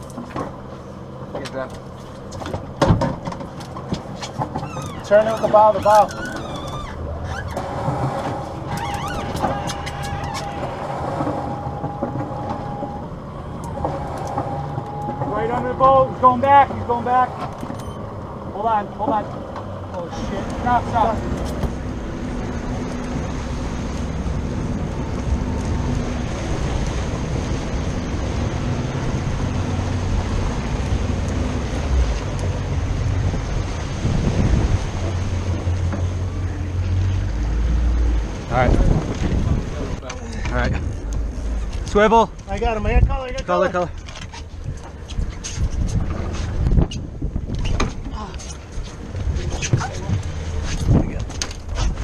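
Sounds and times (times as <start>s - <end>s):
boat engine rumbling: 0.0s - 52.0s
water washing against hull: 0.0s - 52.0s
wind buffeting microphone: 2.4s - 52.0s
high whine: 4.5s - 38.8s.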